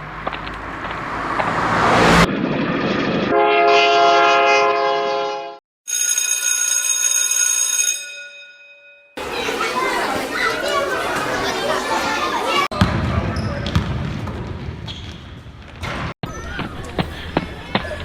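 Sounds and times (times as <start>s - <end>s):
train horn blast: 3.3s - 5.6s.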